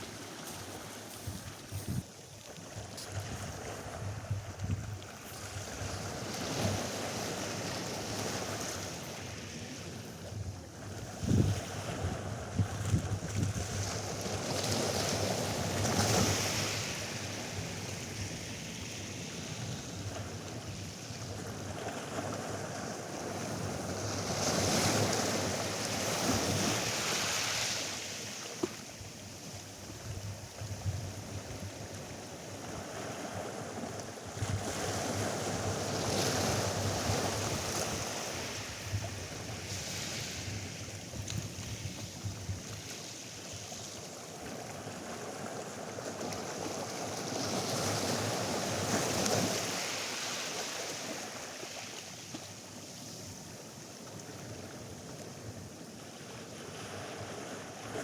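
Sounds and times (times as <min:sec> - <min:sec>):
waves breaking on a beach: 0:00.0 - 0:58.0
wind buffeting microphone: 0:01.1 - 0:02.1, 0:11.0 - 0:14.1.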